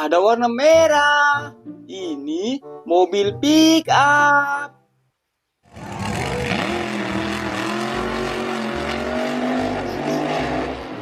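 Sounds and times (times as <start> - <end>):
car engine running: 5.7 - 11.0.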